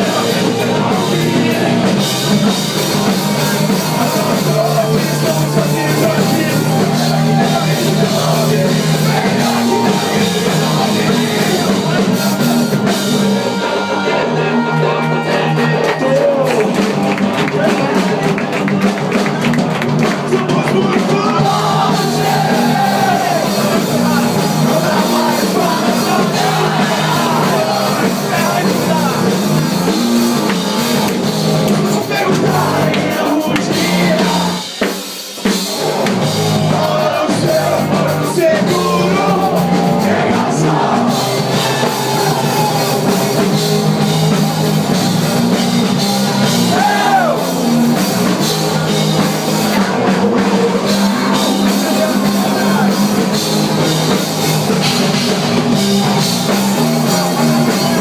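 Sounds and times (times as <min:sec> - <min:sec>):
drum kit: 0:00.0 - 0:58.0
guitars: 0:00.0 - 0:58.0
rock vocals: 0:00.0 - 0:58.0.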